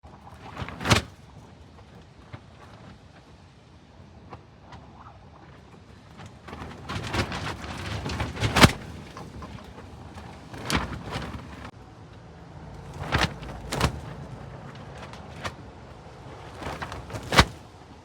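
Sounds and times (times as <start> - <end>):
objects banging and rattling: 6.2 - 11.8, 12.8 - 17.8.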